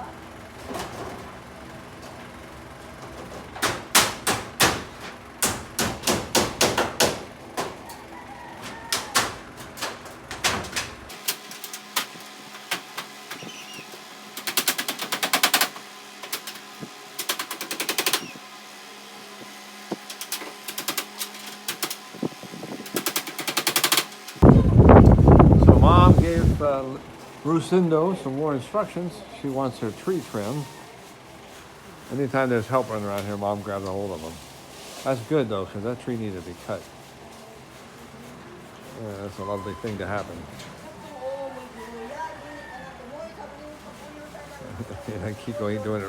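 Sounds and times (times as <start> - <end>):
hammer on metal roofing: 3.6 - 7.8.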